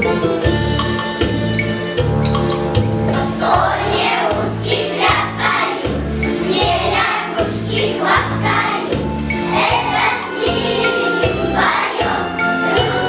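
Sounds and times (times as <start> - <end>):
backing track with steady beat: 0.0 - 13.0
choir singing: 3.2 - 13.0.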